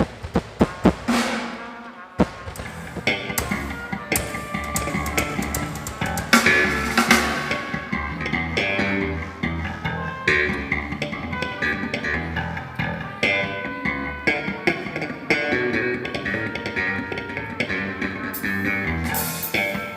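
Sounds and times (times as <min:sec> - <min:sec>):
drum kit: 0:00.0 - 0:09.0, 0:18.3 - 0:19.9
guitar notes: 0:01.1 - 0:19.9
bass guitar: 0:02.2 - 0:19.9.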